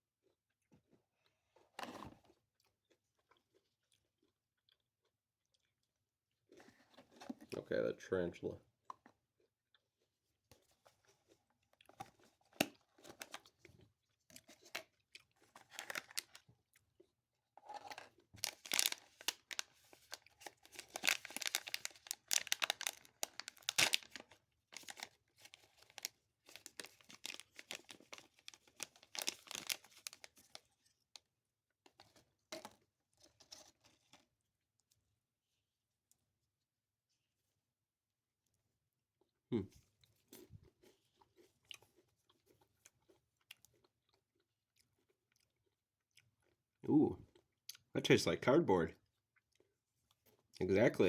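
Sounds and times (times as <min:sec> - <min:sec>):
packaging tearing and crinkling: 0:15.6 - 0:16.4, 0:17.8 - 0:30.6.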